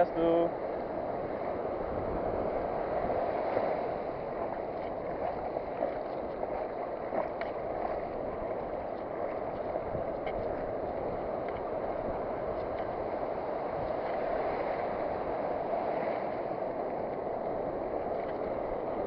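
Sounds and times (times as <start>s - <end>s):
sea surf breaking: 0.0s - 19.0s.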